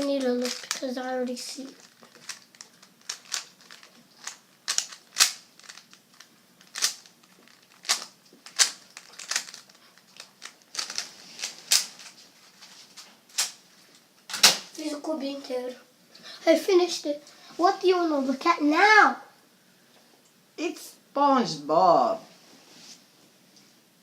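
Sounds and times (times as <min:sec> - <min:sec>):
puzzle cube clicking: 0:01.8 - 0:07.1.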